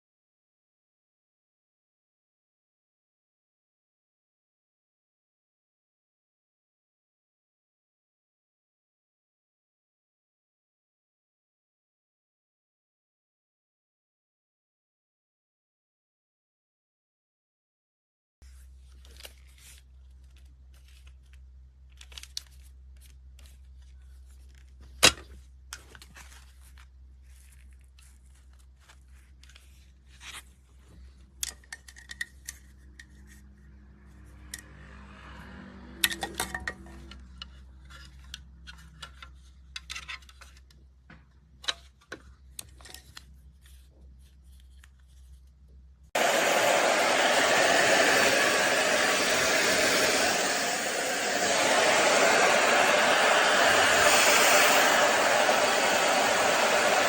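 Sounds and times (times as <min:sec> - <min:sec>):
hair dryer blowing air: 0:46.2 - 0:57.0.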